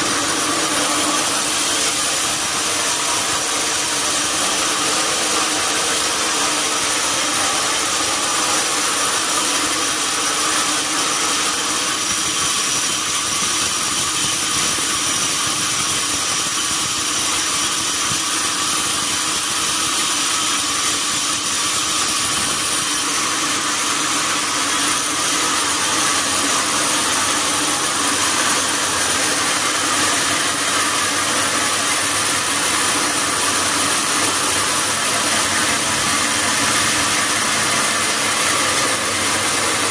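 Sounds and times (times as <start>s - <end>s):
sawmill saw running: 0.0s - 39.9s.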